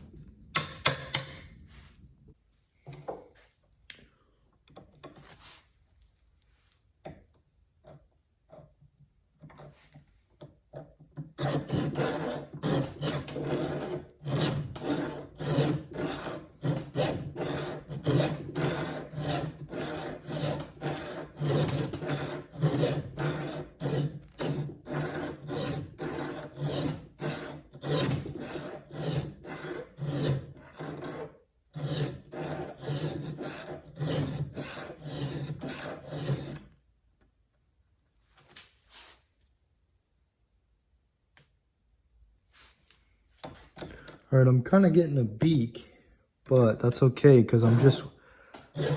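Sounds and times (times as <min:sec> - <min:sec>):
file rasping on steel: 0:11.3 - 0:36.7, 0:47.5 - 0:48.9.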